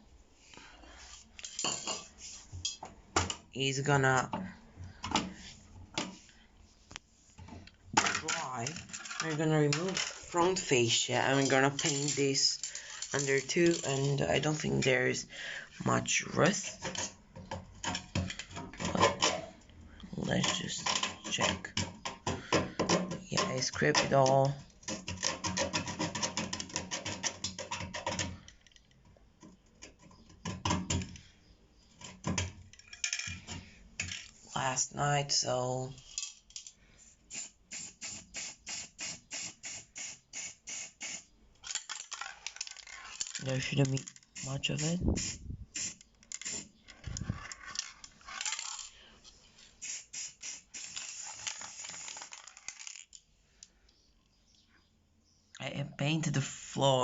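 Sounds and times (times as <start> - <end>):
metallic clicks and rattles: 7.7 - 14.9, 16.5 - 31.3, 32.0 - 34.4, 41.6 - 44.5.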